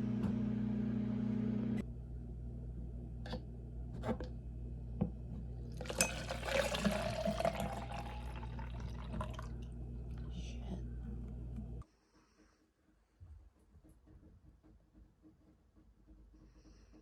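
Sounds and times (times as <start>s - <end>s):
steady low hum: 0.0s - 11.8s
liquid pouring into a glass: 5.8s - 10.4s.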